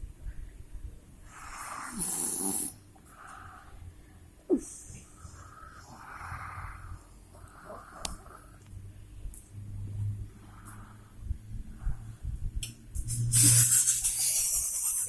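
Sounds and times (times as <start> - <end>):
person snoring: 1.3 - 2.8.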